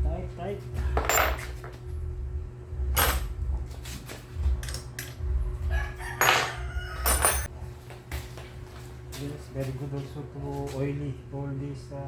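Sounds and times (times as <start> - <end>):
steady low rumble: 0.0 - 6.1
tools and metal parts scraping: 0.8 - 1.8, 3.0 - 5.2, 6.2 - 7.5.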